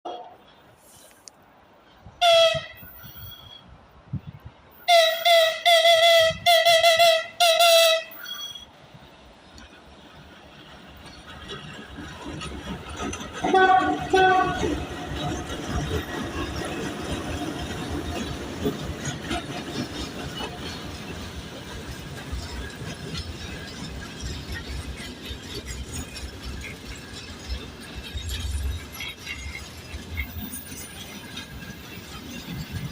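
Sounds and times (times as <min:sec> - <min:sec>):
freight train rumbling past: 0:00.1 - 0:32.9
locomotive whistle blasts: 0:02.2 - 0:03.6, 0:04.8 - 0:08.7
metallic clinks and squeaks: 0:08.2 - 0:08.8, 0:22.2 - 0:32.9.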